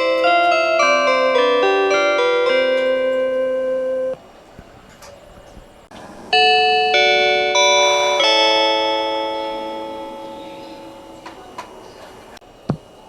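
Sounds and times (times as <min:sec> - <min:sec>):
bell-like chime melody: 0:00.0 - 0:04.2, 0:06.4 - 0:11.3.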